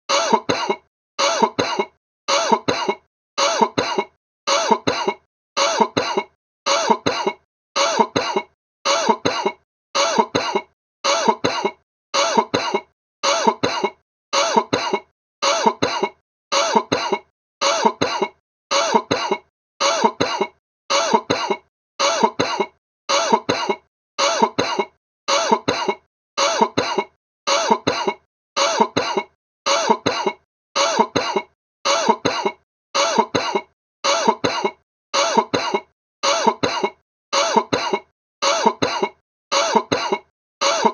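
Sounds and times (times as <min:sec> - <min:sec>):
person coughing: 0:00.1 - 0:40.9.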